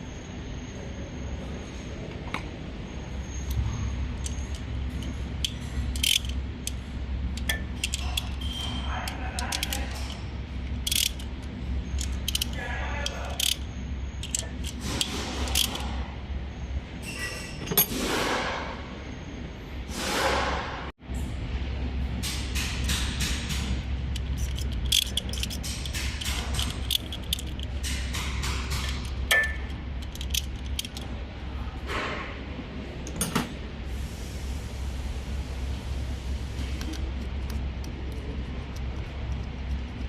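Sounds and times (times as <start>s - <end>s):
low workshop hum: 0.0s - 40.0s
ratchet clicking: 4.2s - 15.9s, 22.4s - 31.1s.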